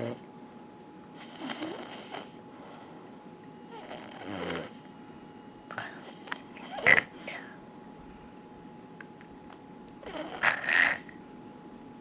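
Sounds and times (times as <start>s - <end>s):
person snoring: 0.0s - 0.2s, 1.2s - 2.4s, 3.7s - 4.9s, 5.7s - 7.6s, 10.0s - 11.2s.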